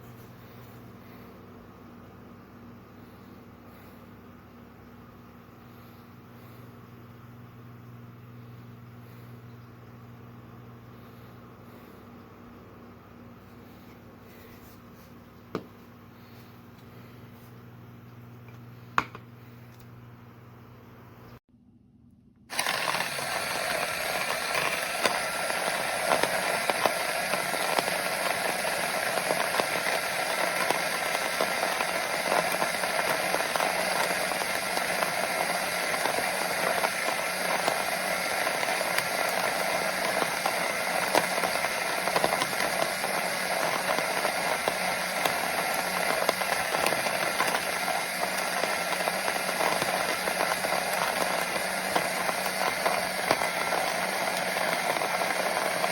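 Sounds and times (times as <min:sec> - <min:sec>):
electric coffee grinder grinding beans: 0:22.5 - 0:55.9.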